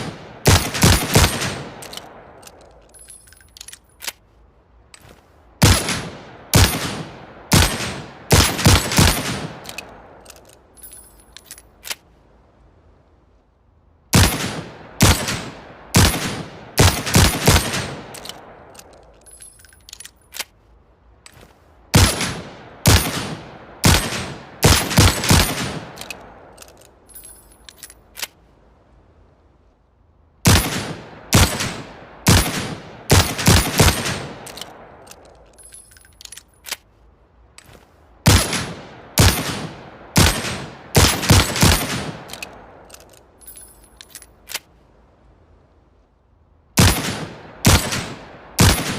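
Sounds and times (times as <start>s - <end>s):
light clicks: 1.8s - 5.4s, 18.1s - 21.7s, 34.4s - 38.0s, 42.2s - 44.8s.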